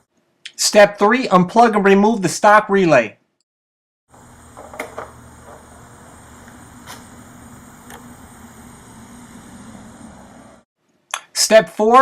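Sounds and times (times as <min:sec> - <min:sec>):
steady low hum: 0:04.1 - 0:10.6.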